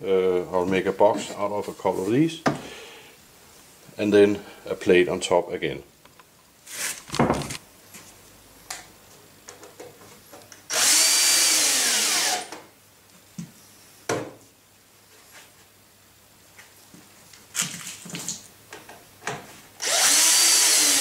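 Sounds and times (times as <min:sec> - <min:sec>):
knocks and clunks from handling: 0:07.1 - 0:07.6
power drill running: 0:10.7 - 0:12.6, 0:19.8 - 0:21.0.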